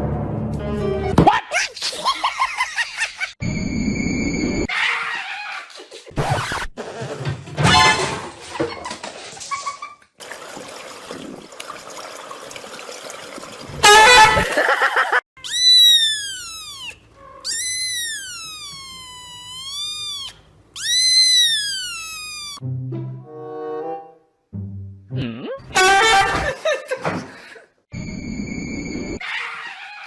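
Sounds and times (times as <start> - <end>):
animal high rising and falling cries: 15.4 - 22.6, 29.2 - 30.0.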